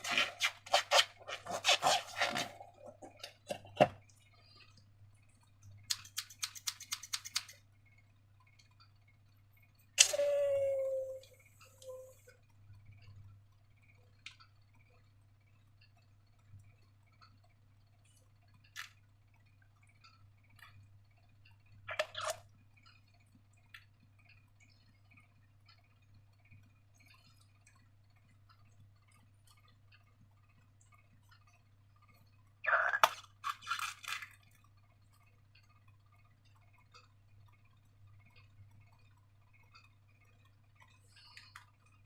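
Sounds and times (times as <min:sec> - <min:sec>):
clicks and taps of objects: 0:05.8 - 0:07.6.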